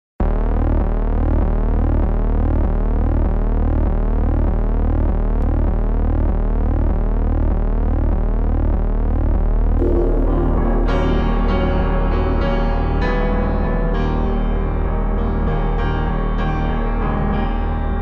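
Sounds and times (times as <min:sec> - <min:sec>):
upward sweeping electronic tone: 0:09.8 - 0:13.1
piano music: 0:09.8 - 0:18.0.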